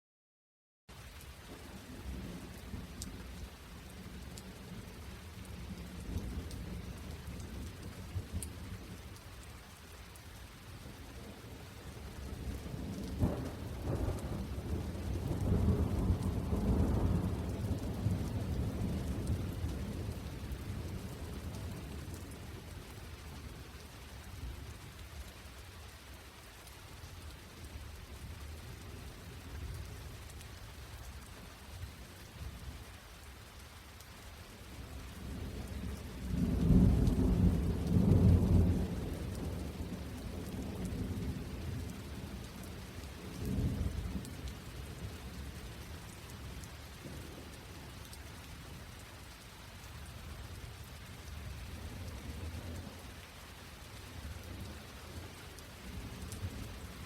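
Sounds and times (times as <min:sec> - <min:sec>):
steady rain: 0:00.9 - 0:57.0
thunder rumbling: 0:12.1 - 0:22.5, 0:35.2 - 0:42.3.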